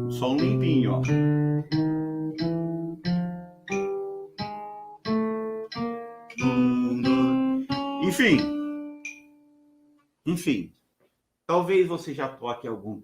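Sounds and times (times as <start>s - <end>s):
acoustic guitar picked notes: 0.0s - 10.1s.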